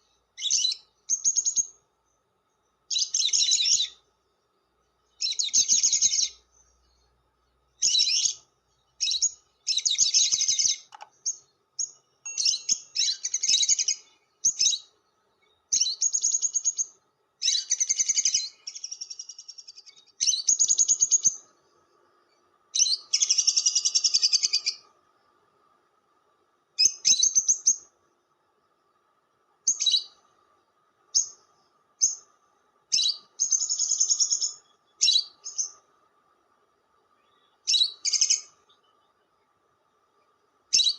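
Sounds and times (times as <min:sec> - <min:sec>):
lovebird chattering calls: 0:09.0 - 0:14.8, 0:22.7 - 0:24.8, 0:32.9 - 0:35.8, 0:37.7 - 0:38.5.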